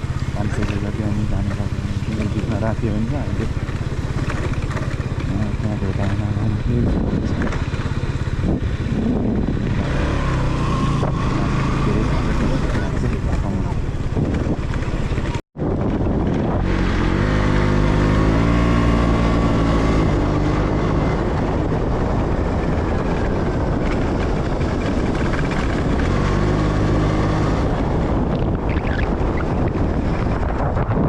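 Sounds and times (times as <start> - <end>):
motorcycle engine revving: 0.0 - 31.0
wind rushing over microphone: 0.0 - 31.0.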